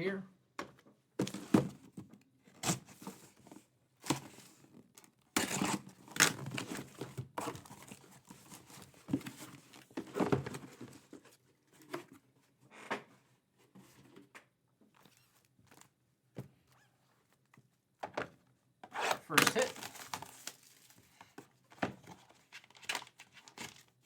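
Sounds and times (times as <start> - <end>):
card packaging ripping: 19.0 - 20.9.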